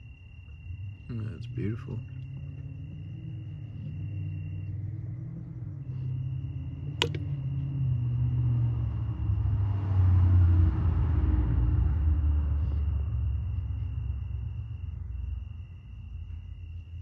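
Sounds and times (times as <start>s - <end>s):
high insect trill: 0.0s - 8.4s
sharp click: 7.0s - 7.2s.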